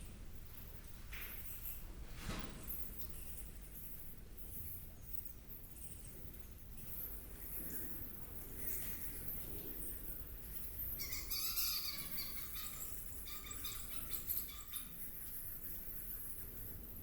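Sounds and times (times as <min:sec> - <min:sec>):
birds chirping: 0:10.9 - 0:15.2.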